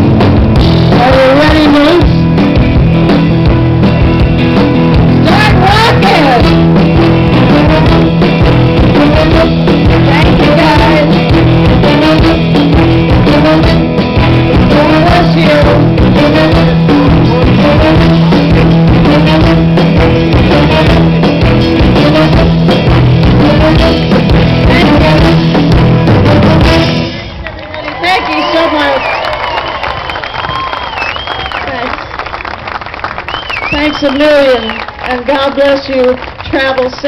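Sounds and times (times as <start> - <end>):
bass guitar: 0.0 - 27.4
electric guitar: 0.0 - 28.7
drums: 0.0 - 31.9, 33.0 - 37.0.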